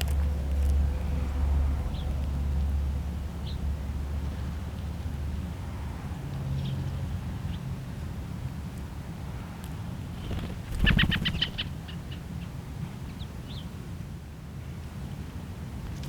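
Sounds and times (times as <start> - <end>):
low rumble of road traffic: 0.0 - 16.0
small birds chirping: 10.2 - 12.3.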